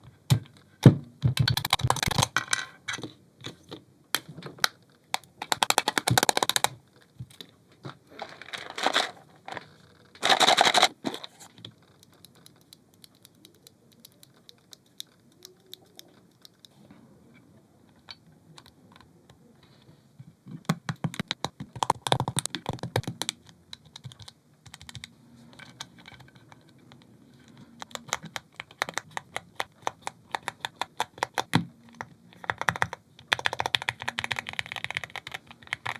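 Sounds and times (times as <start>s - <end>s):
mechanical keyboard typing: 1.4s - 2.4s, 5.2s - 6.8s, 11.9s - 16.7s, 20.8s - 27.1s, 27.7s - 35.9s.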